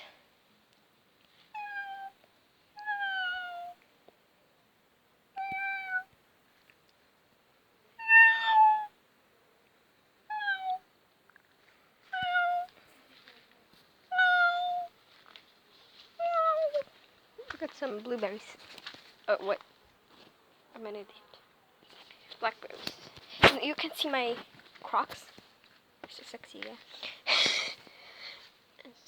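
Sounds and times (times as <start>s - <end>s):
cat meowing: 1.5s - 2.2s, 2.8s - 3.8s, 5.4s - 6.1s, 8.0s - 8.9s, 10.3s - 10.8s, 12.1s - 12.8s, 14.1s - 14.9s, 16.2s - 16.9s.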